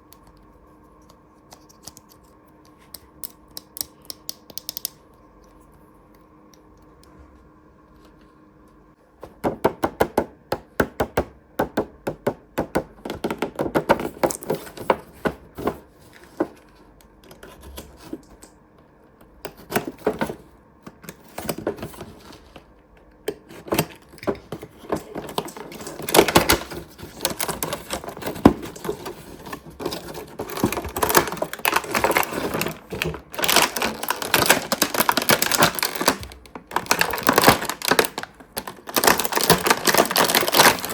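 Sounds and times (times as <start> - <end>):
plastic toy pieces clicking: 3.2 - 5.0.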